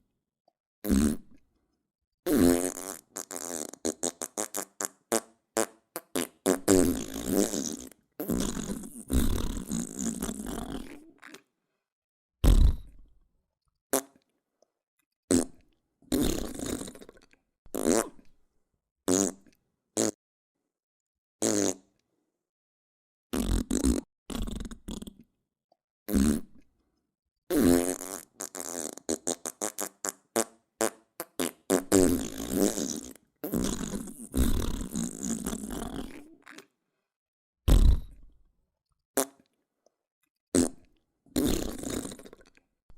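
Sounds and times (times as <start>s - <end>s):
fart sound effects: 0.8s - 1.4s, 2.3s - 11.4s, 12.4s - 13.0s, 15.3s - 17.1s, 17.7s - 18.3s, 19.1s - 19.4s, 21.4s - 21.8s, 23.3s - 25.2s, 26.1s - 26.6s, 27.5s - 36.6s, 37.7s - 38.2s, 40.6s - 40.8s, 41.4s - 42.4s.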